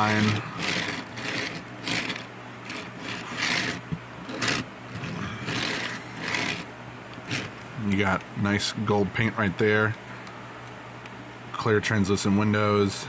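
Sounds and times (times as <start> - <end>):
plastic toy wheels rolling: 0.0 - 6.7, 7.3 - 7.5.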